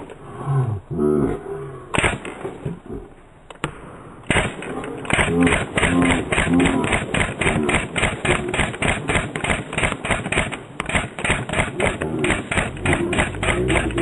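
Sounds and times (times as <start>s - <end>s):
paintball gun firing rapidly: 2.0s - 2.4s, 4.3s - 14.0s.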